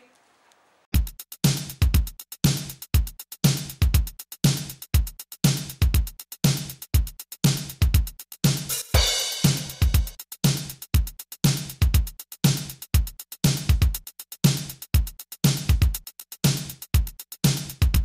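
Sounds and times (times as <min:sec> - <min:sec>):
electronic music: 0:01.0 - 0:10.8
drum-machine bass drum: 0:01.0 - 0:18.0
hi-hat strokes: 0:01.0 - 0:18.0.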